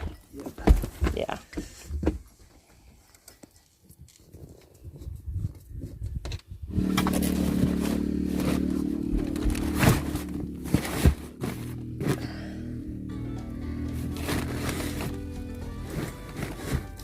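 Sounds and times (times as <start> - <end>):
background music with held chords: 12.6 - 17.0.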